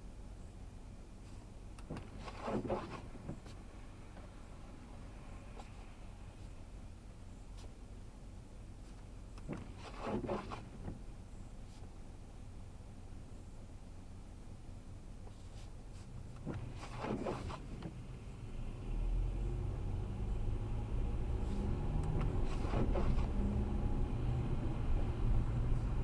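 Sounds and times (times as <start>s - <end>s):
low rumble with engine hum: 0.0s - 26.0s
brief rustles: 1.2s - 3.6s, 8.8s - 11.0s, 15.3s - 17.9s, 22.3s - 23.3s.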